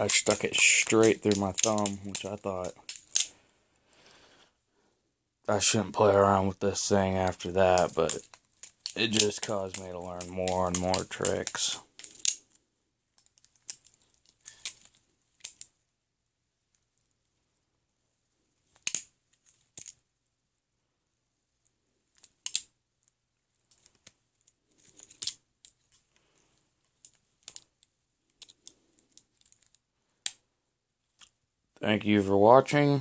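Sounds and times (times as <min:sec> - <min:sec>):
butterfly knife handles clacking: 0:00.0 - 0:03.3, 0:07.2 - 0:12.4.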